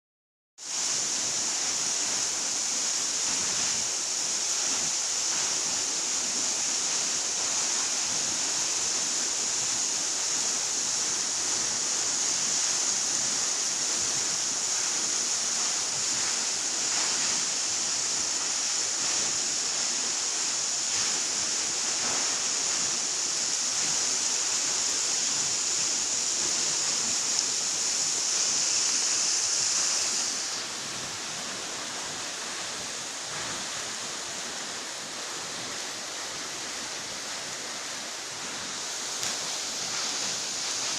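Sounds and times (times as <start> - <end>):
waterfall rushing: 0.6 - 40.9.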